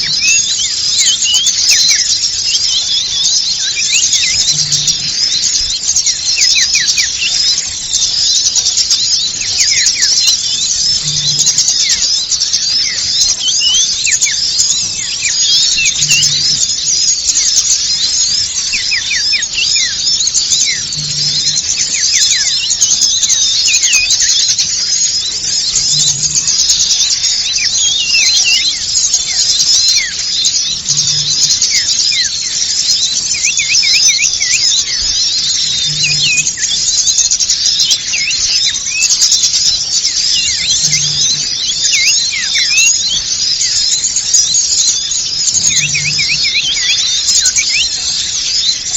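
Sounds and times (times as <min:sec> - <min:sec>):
small songbirds chattering: 0:00.0 - 0:48.9.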